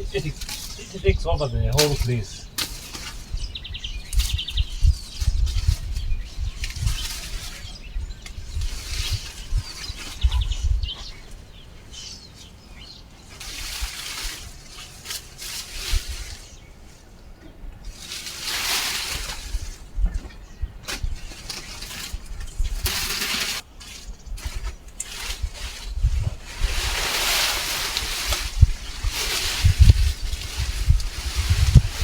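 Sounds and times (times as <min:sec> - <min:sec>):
wind buffeting on microphone: 0:00.0 - 0:12.1, 0:19.4 - 0:22.9, 0:25.4 - 0:32.0
leaves and vines rustling: 0:00.0 - 0:32.0.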